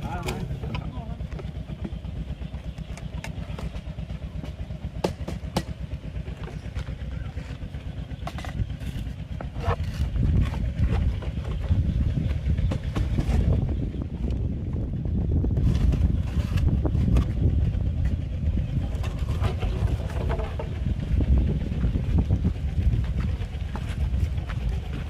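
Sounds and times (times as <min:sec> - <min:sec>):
small engine running: 0:00.0 - 0:25.0.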